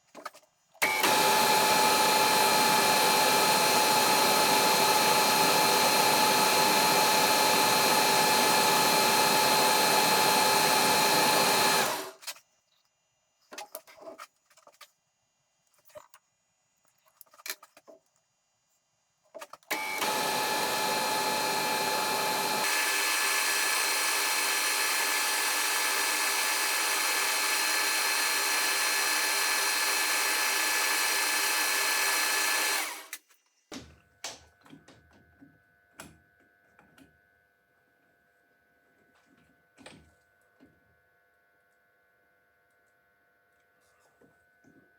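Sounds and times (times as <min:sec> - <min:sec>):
lathe running with a whine: 0:00.8 - 0:12.1, 0:19.7 - 0:33.1.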